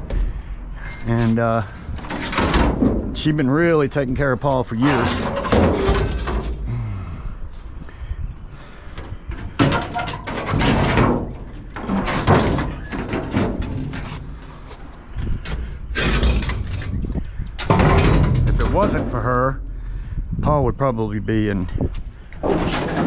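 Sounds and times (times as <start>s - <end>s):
scrap metal clanking and scraping: 0.0s - 3.8s, 4.7s - 6.8s, 8.9s - 20.1s, 22.4s - 23.0s.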